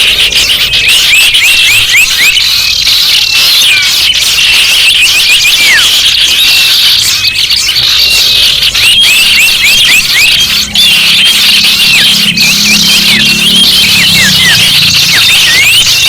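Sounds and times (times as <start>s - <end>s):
small birds chirping and trilling: 0.0s - 16.0s.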